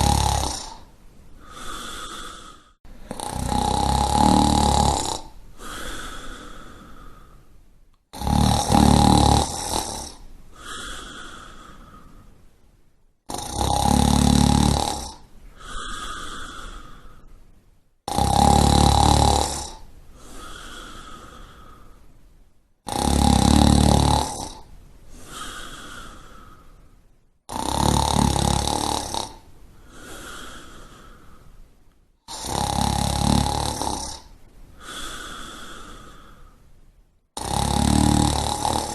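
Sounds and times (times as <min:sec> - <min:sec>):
person snoring: 0:00.0 - 0:07.5, 0:08.1 - 0:12.2, 0:13.3 - 0:17.3, 0:18.0 - 0:22.0, 0:22.8 - 0:26.8, 0:27.5 - 0:31.5, 0:32.2 - 0:36.6, 0:37.4 - 0:38.9
soft breath sound: 0:00.0 - 0:12.8, 0:14.7 - 0:17.6, 0:19.1 - 0:22.6, 0:23.3 - 0:27.3, 0:28.0 - 0:32.8, 0:33.5 - 0:38.9.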